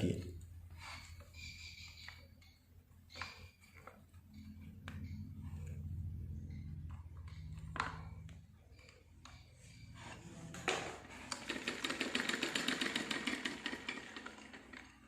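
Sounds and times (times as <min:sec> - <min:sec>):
sewing machine running: 0:09.9 - 0:15.0.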